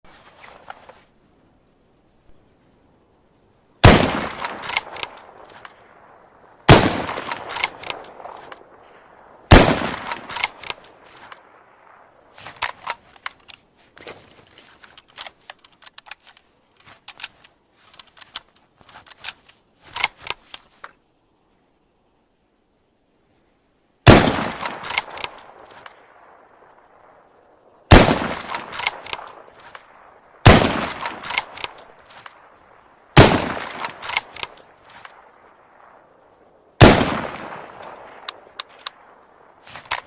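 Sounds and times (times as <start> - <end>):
rifle shots: 3.8 - 5.2, 6.7 - 8.5, 9.5 - 10.8, 24.1 - 25.3, 27.9 - 29.3, 30.4 - 31.8, 33.2 - 34.6, 36.8 - 38.8.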